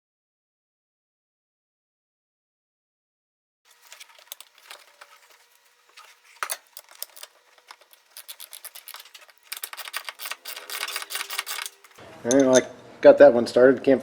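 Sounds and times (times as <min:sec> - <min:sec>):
scraping and rubbing: 0:03.7 - 0:12.0
small metal clicks: 0:03.7 - 0:12.6.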